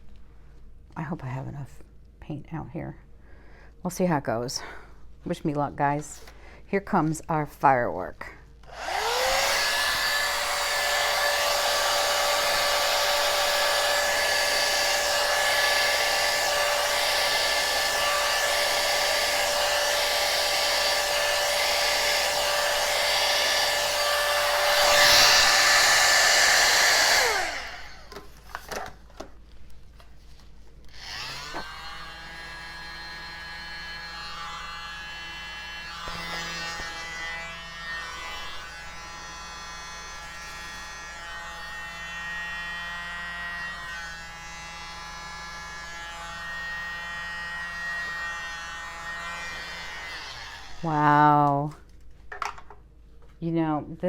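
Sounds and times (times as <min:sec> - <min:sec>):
hair dryer blowing: 0:08.6 - 0:28.9, 0:30.9 - 0:51.6
small electric motor buzzing: 0:08.7 - 0:28.8, 0:30.9 - 0:51.4.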